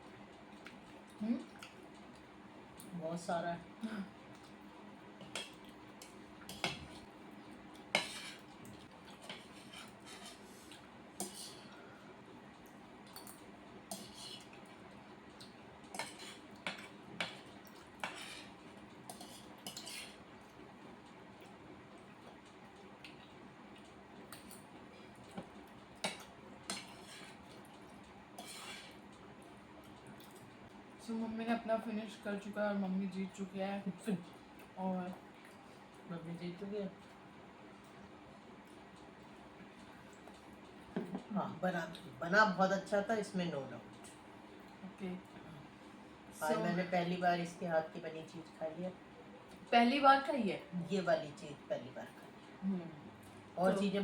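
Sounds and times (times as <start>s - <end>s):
cutlery scraping: 8.0s - 8.4s, 9.2s - 10.5s, 11.2s - 11.6s, 13.9s - 14.5s, 16.0s - 17.4s, 18.0s - 18.5s, 19.1s - 20.2s, 26.0s - 27.4s, 28.4s - 29.0s.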